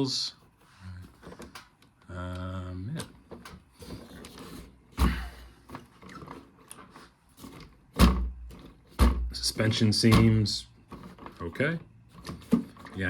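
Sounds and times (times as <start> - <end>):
plastic clicks and rattles: 1.1 - 2.4
heavy thumps: 8.0 - 10.6.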